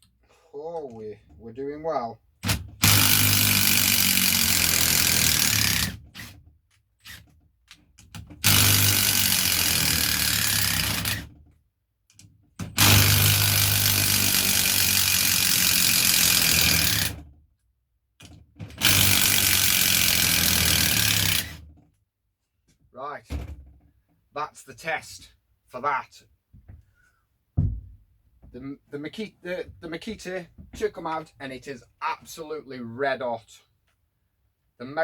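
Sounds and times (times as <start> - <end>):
impact driver hammering: 2.4 - 6.3, 8.4 - 11.2, 12.6 - 17.2, 18.8 - 21.6.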